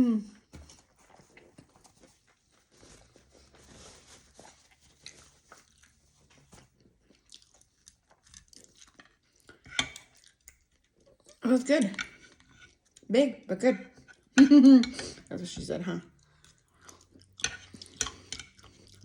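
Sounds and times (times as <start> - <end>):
wet chewing and mouth clicks: 4.4 - 13.1, 13.9 - 15.2, 16.0 - 19.0.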